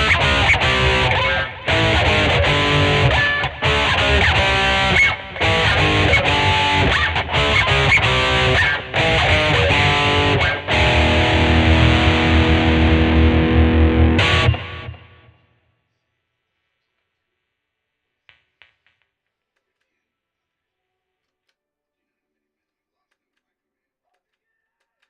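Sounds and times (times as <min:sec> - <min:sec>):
distorted electric guitar lead: 0:00.0 - 0:15.4.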